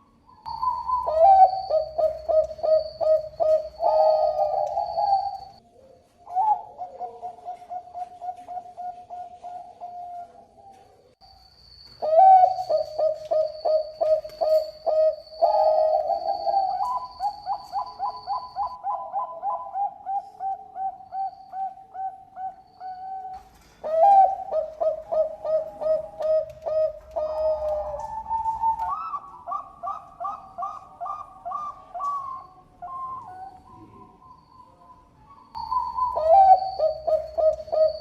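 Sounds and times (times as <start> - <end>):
dove cooing: 0.0 - 11.2, 12.0 - 38.0.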